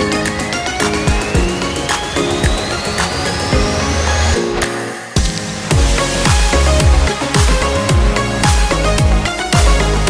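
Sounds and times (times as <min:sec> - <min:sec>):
electronic music with heavy beat: 0:00.0 - 0:10.0
sliding bass hits: 0:02.4 - 0:10.0.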